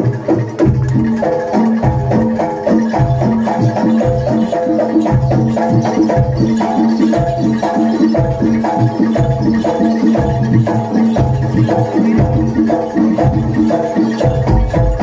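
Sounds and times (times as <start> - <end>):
deep drum beats: 0.0 - 15.0
struck gamelan metal notes: 0.0 - 15.0.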